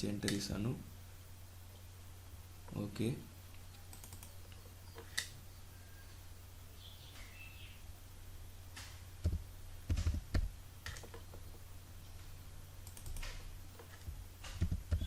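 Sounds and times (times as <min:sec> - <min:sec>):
low electrical hum: 0:00.0 - 0:15.0
keyboard and mouse clicks: 0:03.5 - 0:05.3, 0:08.8 - 0:11.5, 0:12.8 - 0:15.0.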